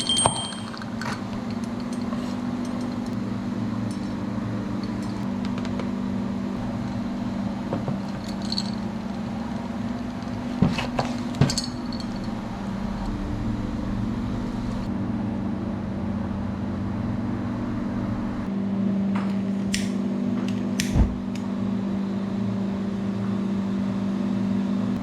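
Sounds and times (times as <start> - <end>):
cookware clinking: 0.0 - 0.9
steady low hum: 0.0 - 25.0.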